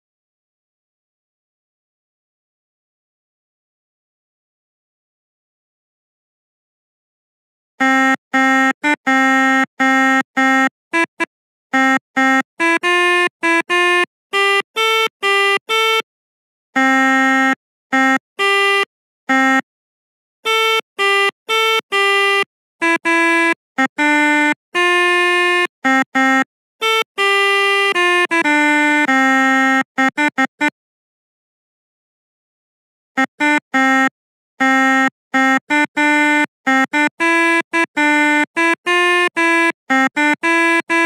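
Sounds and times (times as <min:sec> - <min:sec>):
melodica playing reedy notes: 0:07.8 - 0:16.1, 0:16.8 - 0:19.6, 0:20.4 - 0:30.8, 0:33.2 - 0:41.0.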